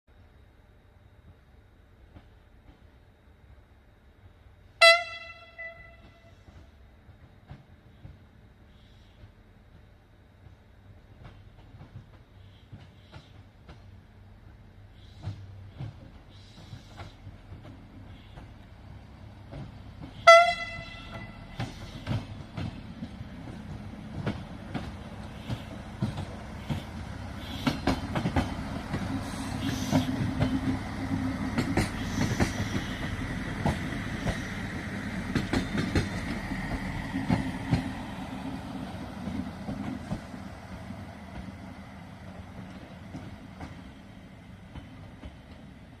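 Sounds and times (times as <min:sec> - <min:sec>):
train engine running: 0:00.2 - 0:46.0
train horn blast: 0:04.8 - 0:06.6, 0:20.2 - 0:21.6
train wheels clicking over rail joints: 0:05.0 - 0:46.0.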